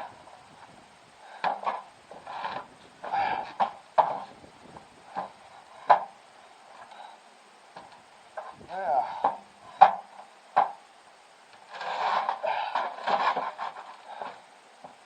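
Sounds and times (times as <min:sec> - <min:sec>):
sharp knocks and scrapes: 0:01.3 - 0:04.4, 0:05.1 - 0:06.2, 0:09.2 - 0:10.8, 0:11.6 - 0:15.0.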